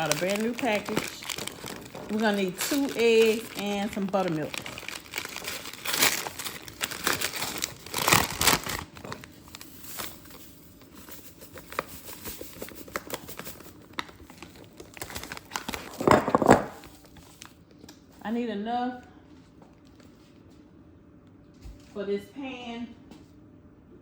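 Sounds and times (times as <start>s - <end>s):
package crinkling and tearing: 0.0s - 18.0s.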